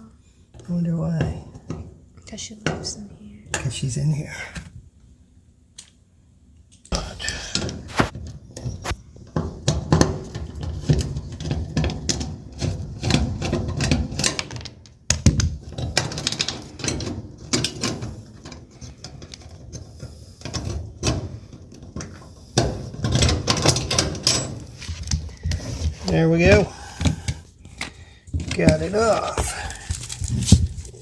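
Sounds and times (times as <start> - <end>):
hand tools clicking and rattling: 6.7 - 31.0.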